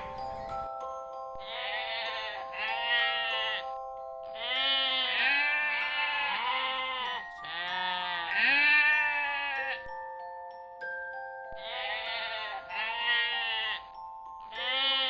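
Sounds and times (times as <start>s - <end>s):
soft background music: 0.0s - 15.0s
farm animal bleating: 1.4s - 3.6s, 4.4s - 9.9s, 11.6s - 13.9s, 14.5s - 15.0s.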